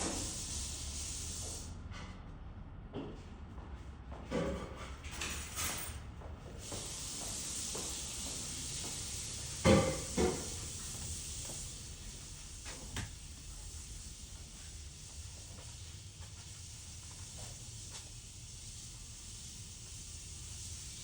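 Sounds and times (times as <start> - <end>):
steady hiss: 0.0 - 1.7, 6.6 - 21.0.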